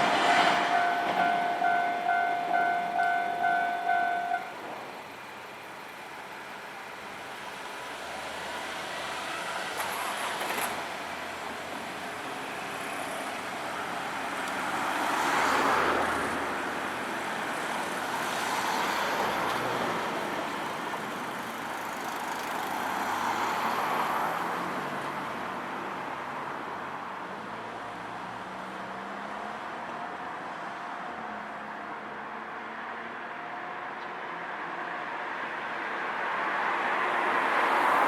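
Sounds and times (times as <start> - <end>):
vehicles passing: 0.0 - 6.0, 6.6 - 38.0.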